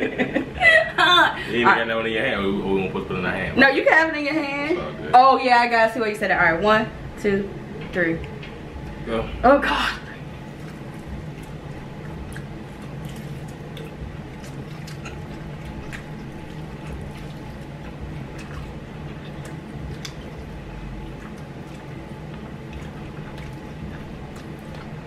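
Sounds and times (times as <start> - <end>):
steady low hum: 0.0 - 25.0
people chewing wet food: 10.2 - 25.0.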